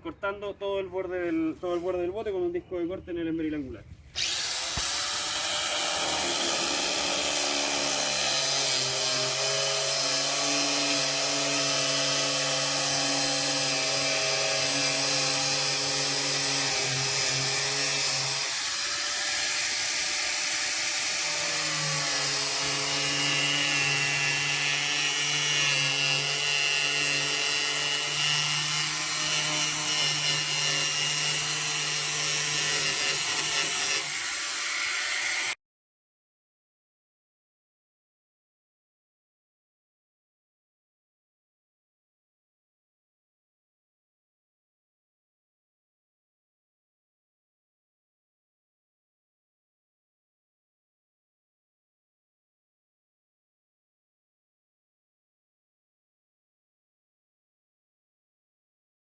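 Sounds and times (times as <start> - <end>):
angle grinder cutting: 4.2 - 35.6.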